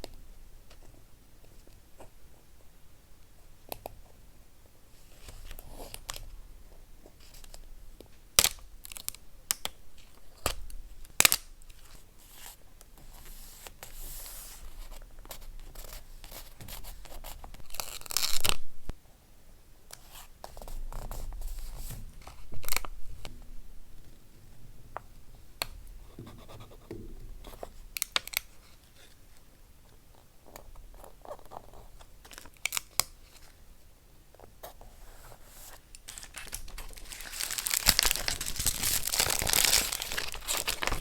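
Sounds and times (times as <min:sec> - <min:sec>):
paper tearing: 0:36.1 - 0:41.0.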